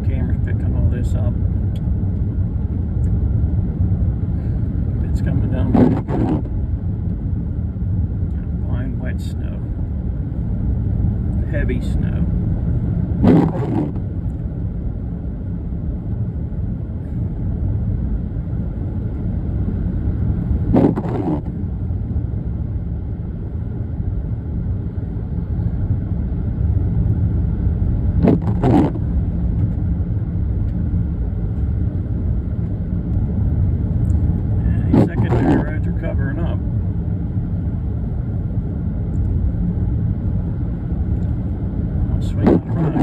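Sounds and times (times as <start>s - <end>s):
car engine and tyre rumble: 0.0s - 43.0s
windshield wiper swishing: 13.2s - 14.0s, 28.2s - 29.0s.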